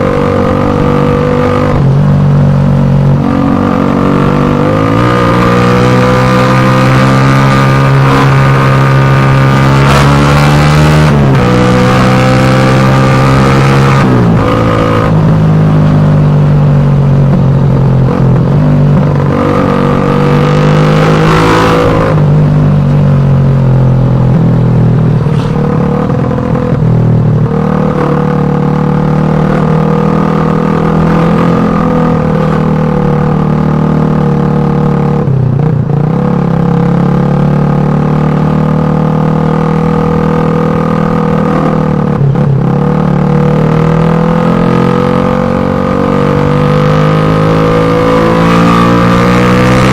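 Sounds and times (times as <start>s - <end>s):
motorcycle engine exhaust: 12.8s - 49.9s.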